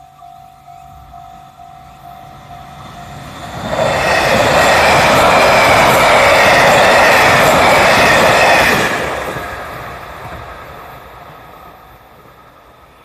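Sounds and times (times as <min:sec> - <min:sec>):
electric train passing: 0:00.0 - 0:13.0
train wheels rolling on rails: 0:00.0 - 0:13.0.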